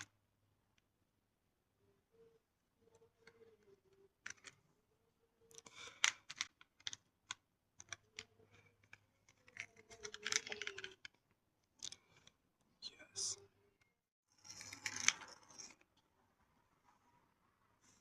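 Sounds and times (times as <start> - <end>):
toy cars clattering: 3.2 - 4.7, 5.5 - 12.4, 14.3 - 16.0.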